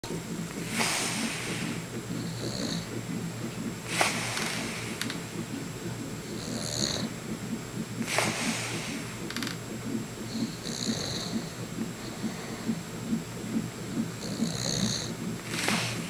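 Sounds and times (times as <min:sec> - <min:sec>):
man snoring: 0:02.2 - 0:02.9, 0:06.4 - 0:07.1, 0:10.6 - 0:11.5, 0:14.2 - 0:15.1.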